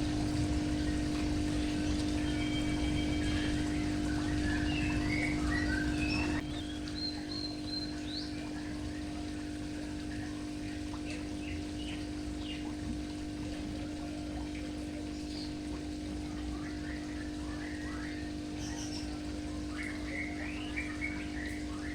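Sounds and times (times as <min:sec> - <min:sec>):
low electric hum: 0:00.0 - 0:21.9
water trickling: 0:00.0 - 0:21.9
high bird chirps: 0:01.6 - 0:09.0.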